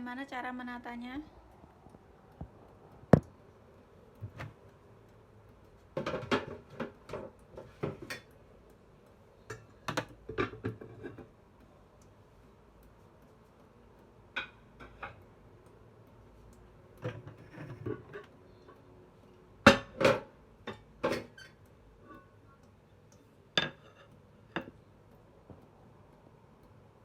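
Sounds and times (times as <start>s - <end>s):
kitchenware knocking and clinking: 6.0s - 8.3s, 9.9s - 11.3s, 19.7s - 21.4s.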